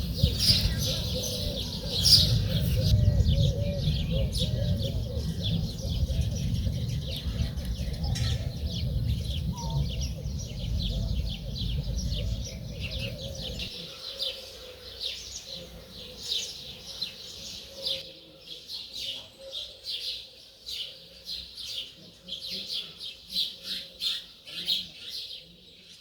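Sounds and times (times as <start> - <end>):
low rumble: 0.0 - 13.7
birds chirping and trilling: 0.0 - 26.0.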